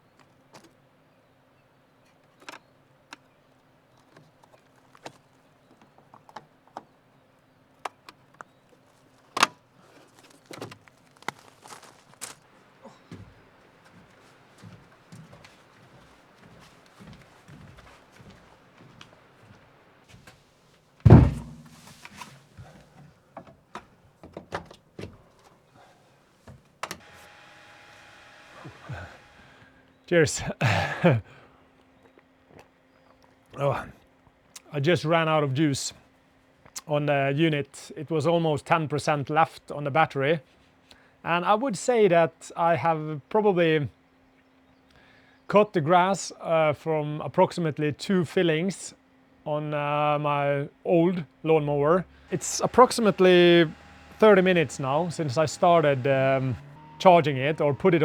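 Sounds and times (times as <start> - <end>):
faint steady hum: 0.0 - 24.3, 25.2 - 58.0
heavy thump: 21.1 - 22.0
sharp clicks and knocks: 21.1 - 22.2.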